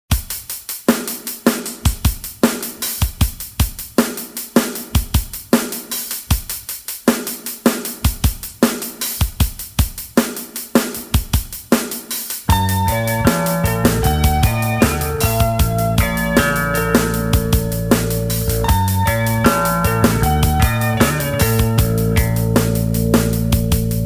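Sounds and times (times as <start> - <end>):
drum kit beat: 0.1 - 24.0
band sustained pitched notes: 12.5 - 24.0.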